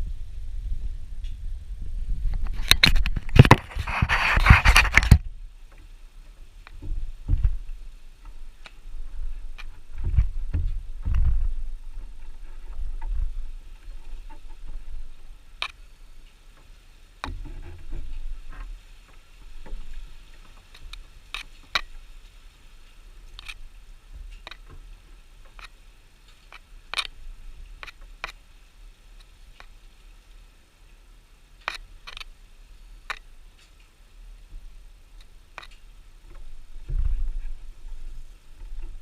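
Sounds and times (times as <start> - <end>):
wooden beehive parts knocking: 6.7 - 8.4
handling thuds on microphone: 6.8 - 7.8, 9.9 - 11.7.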